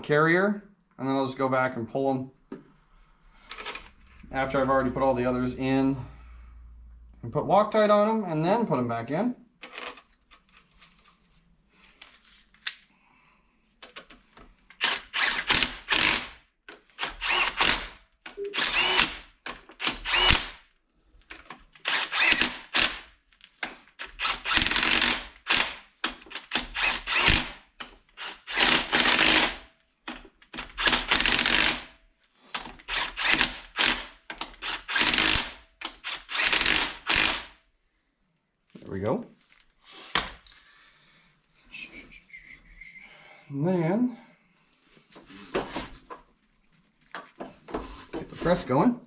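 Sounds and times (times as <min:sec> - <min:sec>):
power tool bursts: 0:14.8 - 0:16.4, 0:17.0 - 0:20.6, 0:21.8 - 0:23.1, 0:24.0 - 0:29.7, 0:30.6 - 0:31.9, 0:32.8 - 0:37.6.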